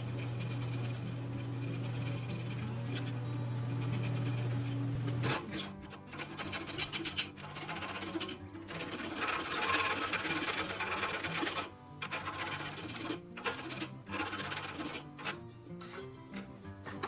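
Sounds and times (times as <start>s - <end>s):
scraping on tin-plate metal: 0.0s - 17.0s.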